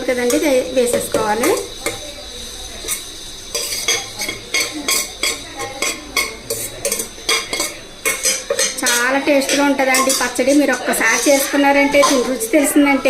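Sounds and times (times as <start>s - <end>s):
metal ladle scraping steel pan: 2.7s - 12.5s.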